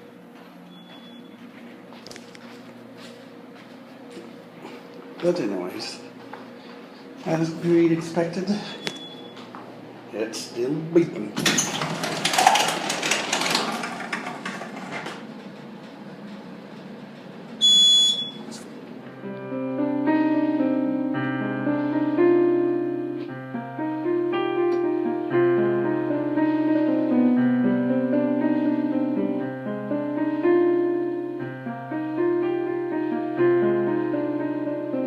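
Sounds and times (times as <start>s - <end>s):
piano music: 7.2s - 9.5s, 17.6s - 35.0s
high-pitched electronic beep: 17.6s - 18.4s.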